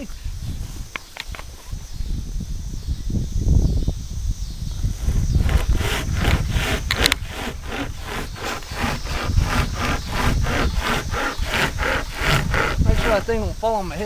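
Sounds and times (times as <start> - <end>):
hand chain saw rasping through wood: 5.4 - 13.4.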